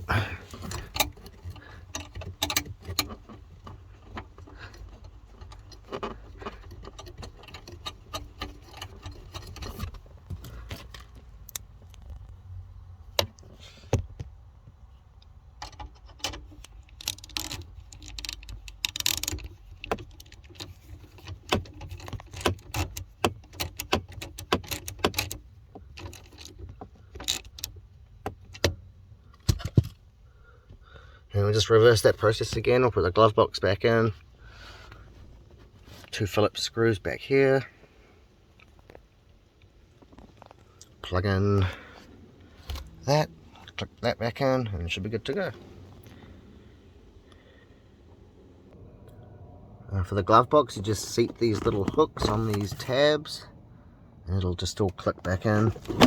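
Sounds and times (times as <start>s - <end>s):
hand tools clicking and rattling: 0.1s - 11.2s, 15.6s - 27.7s.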